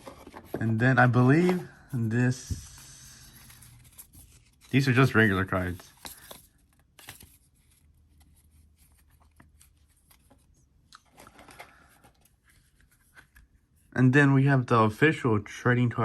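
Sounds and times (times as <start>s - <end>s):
cards and paper being handled: 0.0s - 13.8s
paper rustle: 2.4s - 13.5s.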